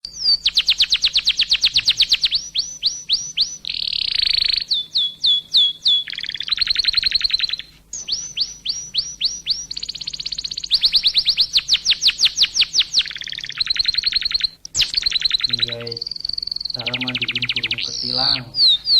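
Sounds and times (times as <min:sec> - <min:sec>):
songbird whistling repeated notes: 0:00.0 - 0:18.9
harsh buzzy bird phrase: 0:14.8 - 0:18.9.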